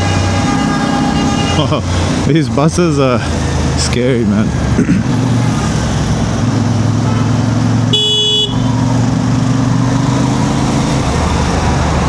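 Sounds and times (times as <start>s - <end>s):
vehicle horn honk: 0.0s - 1.7s, 7.0s - 8.8s
motorcycle engine running: 4.5s - 12.0s.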